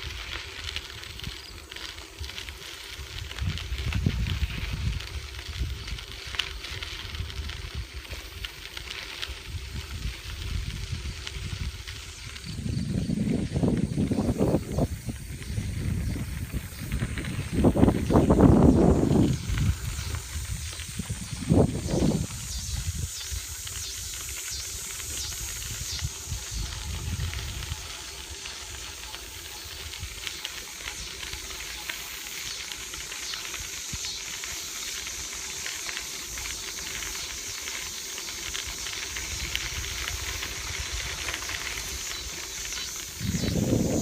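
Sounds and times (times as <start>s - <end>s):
bicycle riding hiss: 0.0s - 44.0s
wind rumble on microphone: 2.2s - 28.9s, 38.7s - 44.0s.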